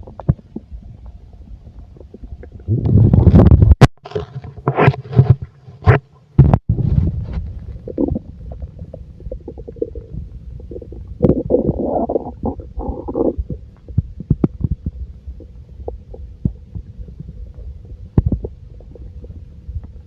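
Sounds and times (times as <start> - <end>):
stomach gurgling and rumbling: 0.0 - 20.0.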